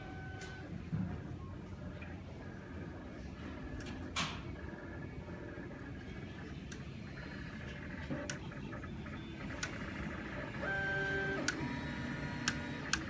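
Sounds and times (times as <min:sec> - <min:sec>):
sharp clicks: 0:12.4 - 0:13.0.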